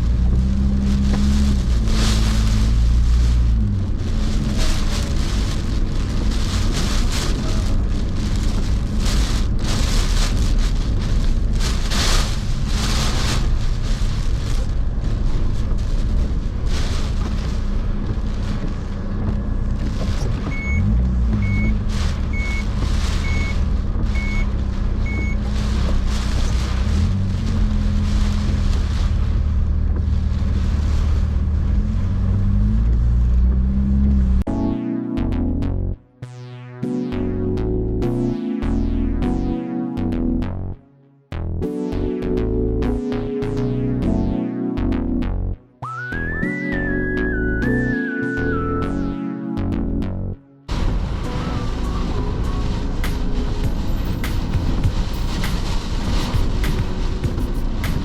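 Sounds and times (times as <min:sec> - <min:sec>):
gusting wind: 0:00.0 - 0:34.5, 0:50.7 - 0:58.0
vehicle engine running: 0:00.0 - 0:34.5, 0:50.0 - 0:58.0
short high beeps: 0:20.5 - 0:21.7, 0:22.4 - 0:22.6, 0:23.2 - 0:23.6, 0:24.2 - 0:24.4, 0:25.1 - 0:25.4.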